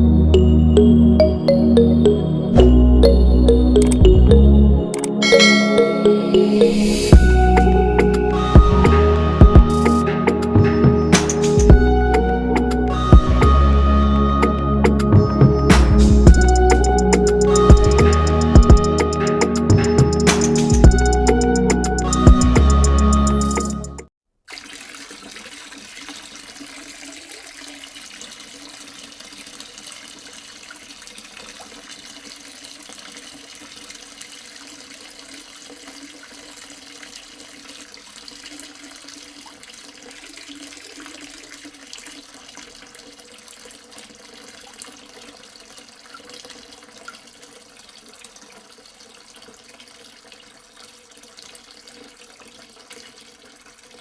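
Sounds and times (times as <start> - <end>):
water running: 4.9 - 12.3, 24.5 - 54.0.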